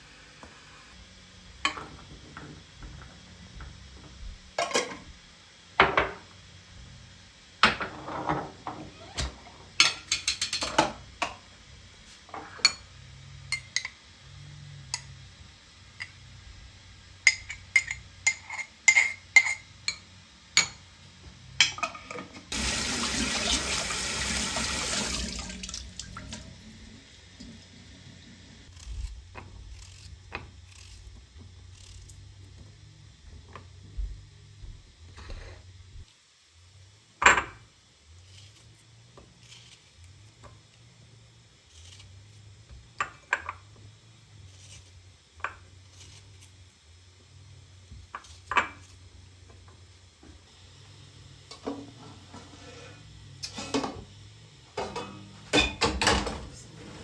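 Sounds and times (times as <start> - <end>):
dishes and utensils clinking: 1.6 - 3.1, 4.6 - 5.1, 7.6 - 11.4, 17.2 - 20.8, 21.6 - 22.8, 54.8 - 56.6
water running: 21.6 - 28.7.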